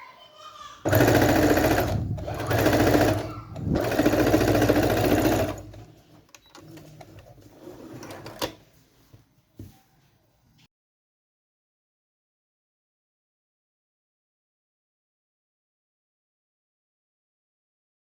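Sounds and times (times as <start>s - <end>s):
sewing machine stitching fabric: 0.8s - 8.6s.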